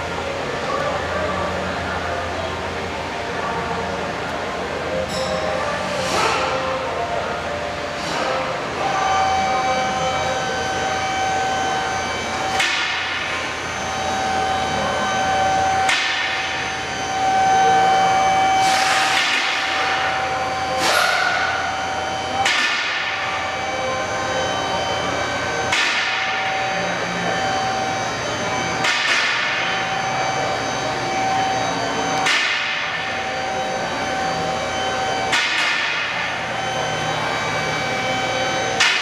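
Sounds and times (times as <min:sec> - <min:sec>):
hammer striking metal: 0:22.4 - 0:23.1, 0:25.7 - 0:26.4, 0:32.2 - 0:33.0, 0:38.8 - 0:39.0.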